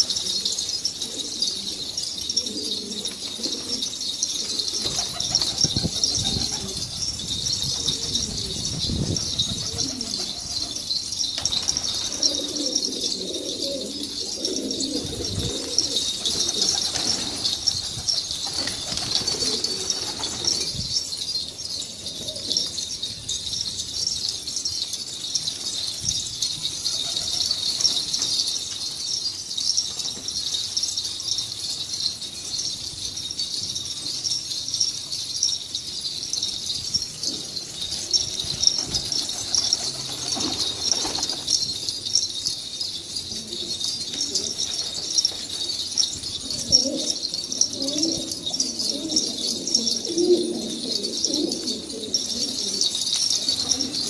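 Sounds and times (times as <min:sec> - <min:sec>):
pigeons cooing: 0:00.0 - 0:20.9, 0:26.8 - 0:28.4, 0:37.2 - 0:41.8, 0:43.2 - 0:54.0
high-pitched chirping: 0:03.8 - 0:13.6.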